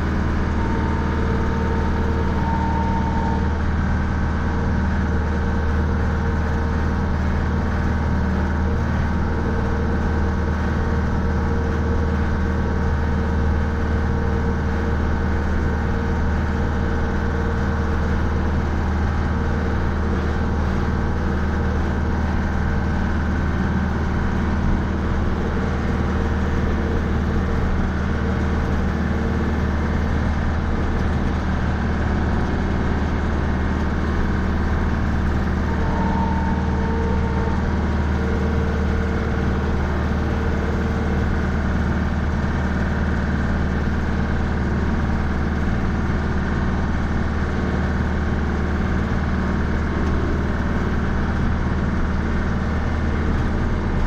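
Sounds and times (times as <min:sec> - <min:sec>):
tractor diesel engine running: 0:00.0 - 0:54.0.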